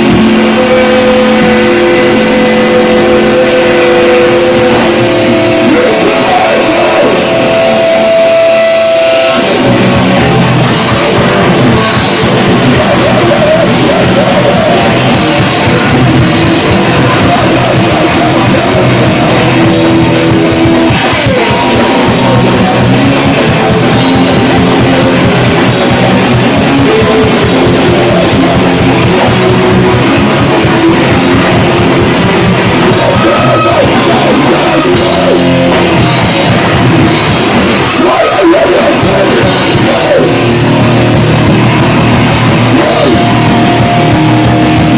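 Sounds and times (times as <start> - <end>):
drums: 0.0 - 44.9
electric guitar: 0.0 - 44.9
rock band playing live: 0.0 - 44.9.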